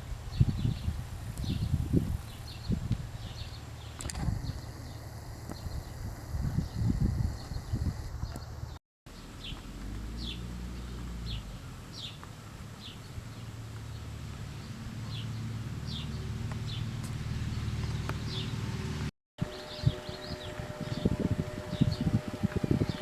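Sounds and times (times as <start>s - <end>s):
bird chirping: 0.3s - 12.2s, 12.8s - 23.0s
low rumble: 0.4s - 8.8s.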